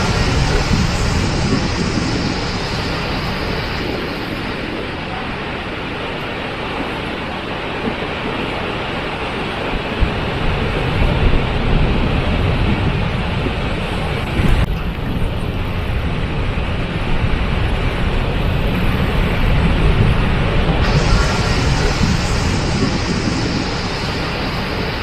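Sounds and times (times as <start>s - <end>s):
waterfall rushing: 0.0s - 7.6s, 20.7s - 25.0s.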